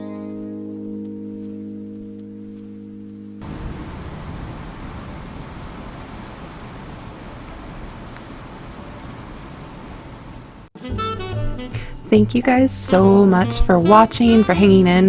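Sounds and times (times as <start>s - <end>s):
steady rushing noise: 3.4s - 10.7s.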